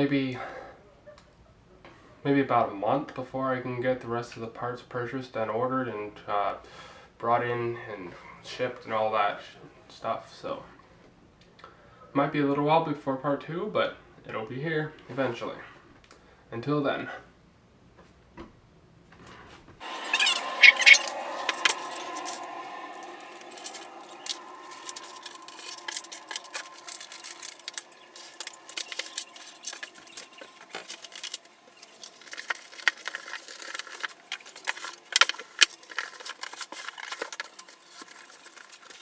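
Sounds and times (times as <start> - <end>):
faint steady hum: 19.8 - 39.0.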